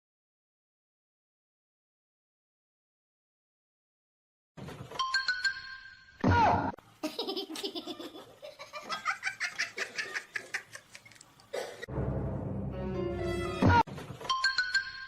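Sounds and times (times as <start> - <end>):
person laughing: 7.0 - 11.8.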